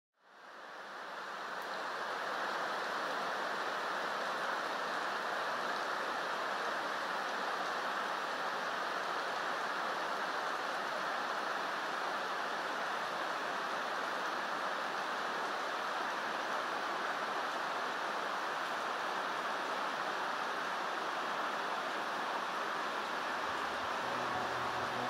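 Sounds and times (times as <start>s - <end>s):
running water rushing: 16.1s - 25.0s.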